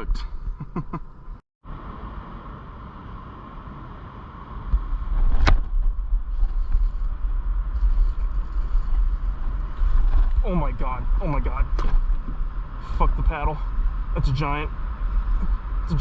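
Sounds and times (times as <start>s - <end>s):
low rumble on microphone: 4.6s - 16.0s.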